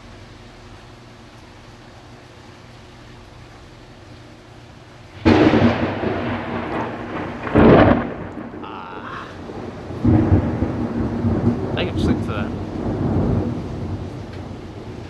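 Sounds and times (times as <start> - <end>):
thunder cracking and rumbling: 5.2 - 15.0.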